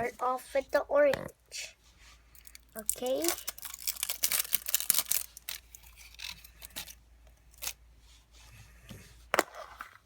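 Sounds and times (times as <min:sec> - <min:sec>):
plastic rustling: 0:02.4 - 0:07.0.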